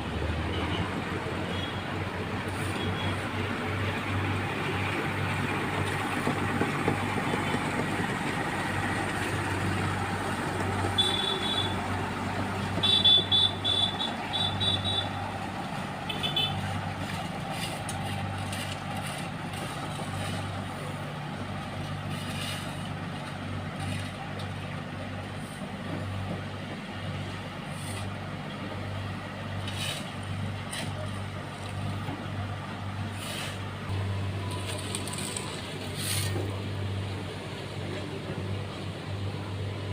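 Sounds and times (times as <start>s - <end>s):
heavy diesel engines running: 0.0s - 39.9s
vehicle warning beeper: 34.0s - 36.0s.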